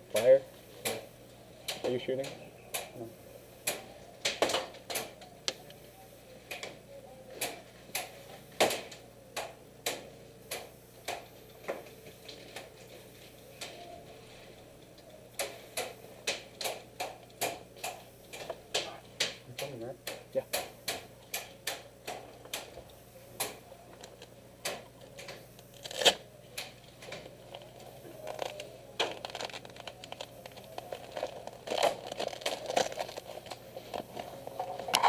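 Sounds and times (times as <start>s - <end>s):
sharp clicks and snaps: 14.9s - 27.2s.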